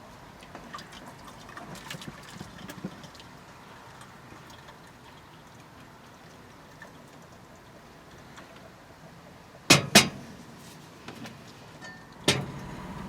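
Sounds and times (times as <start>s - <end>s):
juice dribbling: 0.0s - 9.7s.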